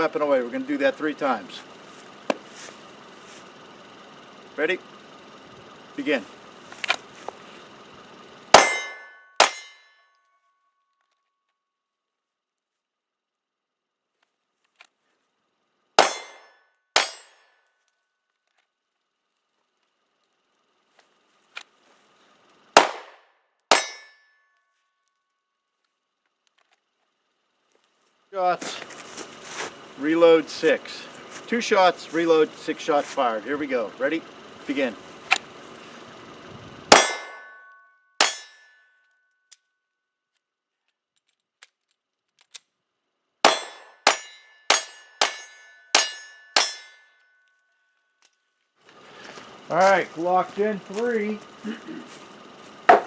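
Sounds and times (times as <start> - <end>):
pistol shots: 8.5 - 9.7, 22.8 - 24.0, 36.9 - 37.4
metallic ring: 8.5 - 11.0, 16.0 - 17.9, 23.7 - 25.1, 36.9 - 39.7, 43.5 - 48.6.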